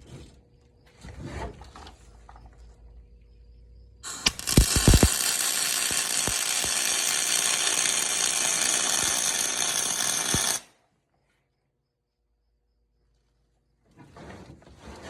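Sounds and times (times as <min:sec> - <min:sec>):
power tool running: 0:04.0 - 0:10.6.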